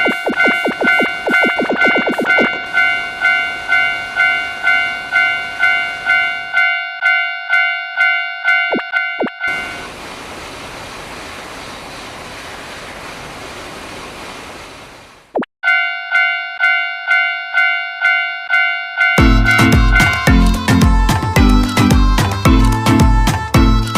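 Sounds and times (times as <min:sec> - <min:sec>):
train passing with rushing noise: 0:00.0 - 0:07.0, 0:08.8 - 0:14.2
level crossing warning bell ringing: 0:00.0 - 0:09.8, 0:15.6 - 0:20.5.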